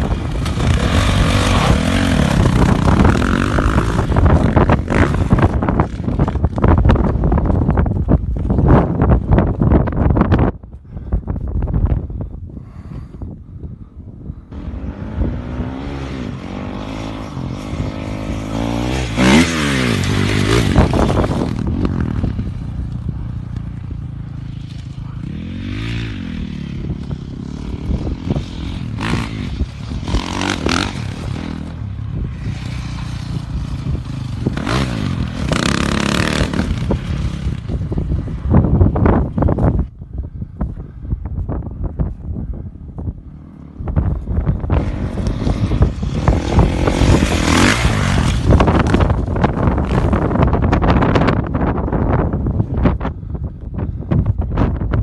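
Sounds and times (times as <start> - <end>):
dirt bike engine revving: 0.0 - 6.4, 14.5 - 22.5, 24.7 - 38.5, 44.6 - 51.3.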